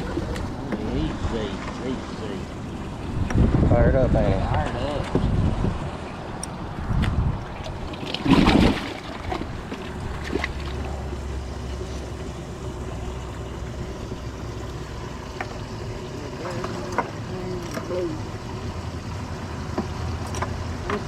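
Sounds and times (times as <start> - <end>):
low motor hum: 0.0 - 21.0
wind rumbling on microphone: 2.4 - 11.2.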